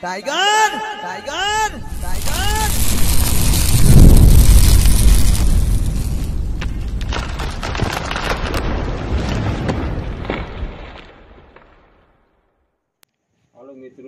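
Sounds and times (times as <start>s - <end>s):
loud rumble with crackles: 1.8s - 12.1s.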